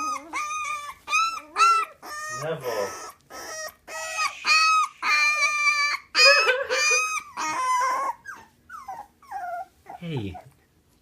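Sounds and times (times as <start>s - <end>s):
puppy crying in high squeals: 0.0s - 10.0s.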